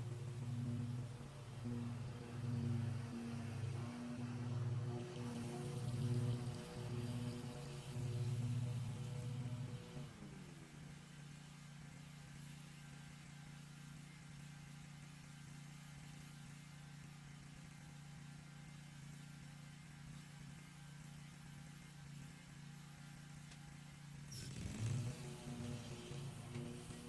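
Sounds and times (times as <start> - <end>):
lawn mower engine running: 0.0 - 10.0.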